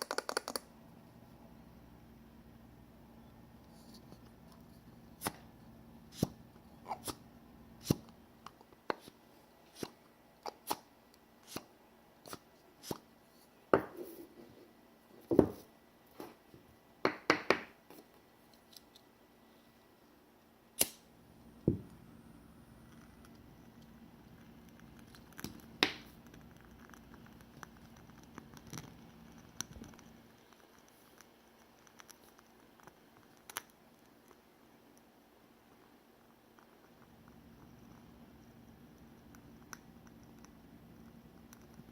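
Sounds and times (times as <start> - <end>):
candle wick crackling: 3.6 - 13.0, 22.6 - 34.4.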